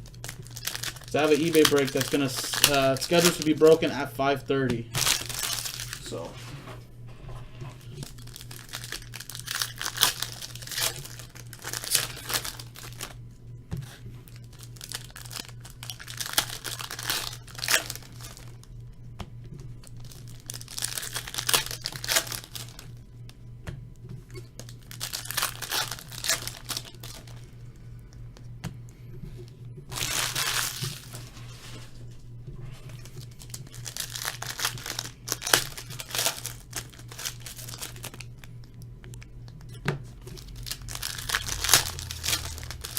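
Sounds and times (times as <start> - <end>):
card packs being torn open: 0.0 - 4.0, 4.9 - 6.3, 8.0 - 13.2, 13.8 - 18.7, 19.8 - 23.0, 24.4 - 27.4, 29.9 - 31.3, 32.8 - 42.9
wrappers crinkling: 0.0 - 4.1, 4.9 - 6.4, 7.7 - 13.2, 13.8 - 18.7, 19.8 - 23.0, 24.4 - 27.6, 29.9 - 42.9
steady low hum: 0.0 - 42.9.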